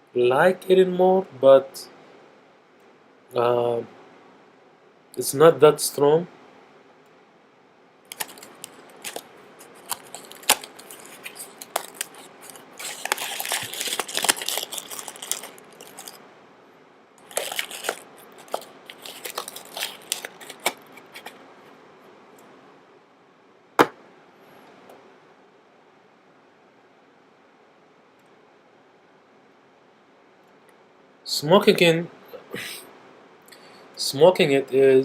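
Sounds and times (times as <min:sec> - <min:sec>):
crinkling and rustling handling noise: 0:08.1 - 0:16.2, 0:17.2 - 0:21.8.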